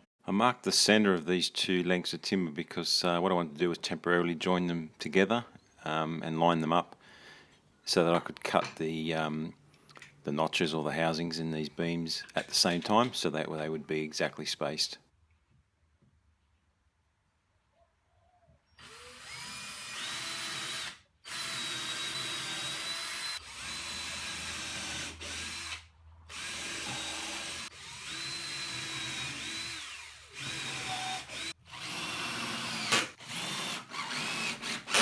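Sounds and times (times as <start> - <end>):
power drill driving screws: 18.8 - 35.0.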